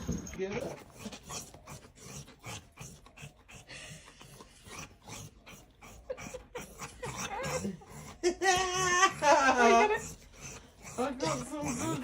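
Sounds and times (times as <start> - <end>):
dog breathing in short puffs: 0.0 - 8.2.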